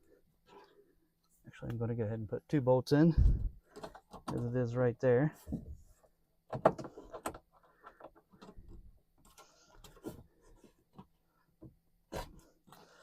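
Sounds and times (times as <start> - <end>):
bolts clicking and knocking: 3.7 - 4.8.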